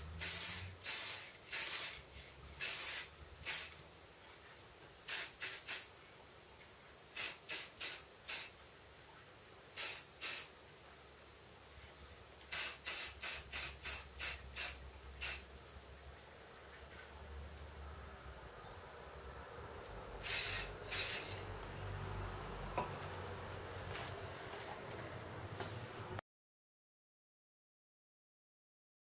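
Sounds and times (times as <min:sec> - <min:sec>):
spray paint can spraying: 0:00.0 - 0:03.8, 0:05.1 - 0:05.9, 0:07.2 - 0:08.6, 0:09.8 - 0:10.5, 0:12.5 - 0:15.4, 0:20.2 - 0:21.5.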